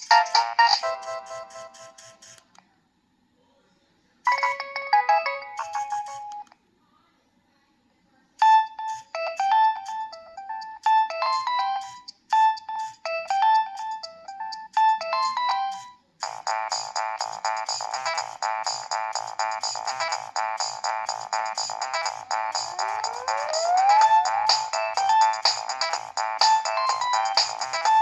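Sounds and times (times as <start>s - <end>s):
phone ringtone melodies: 0.0s - 2.3s, 4.3s - 6.5s, 8.4s - 28.0s.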